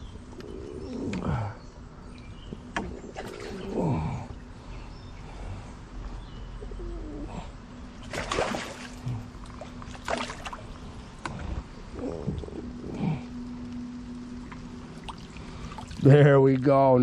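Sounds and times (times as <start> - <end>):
fish thrashing and splashing: 8.0 - 10.9.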